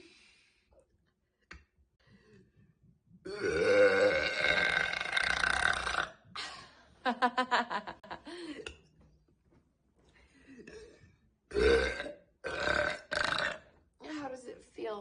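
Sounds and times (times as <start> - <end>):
woman burping: 3.2 - 6.5, 10.5 - 13.7.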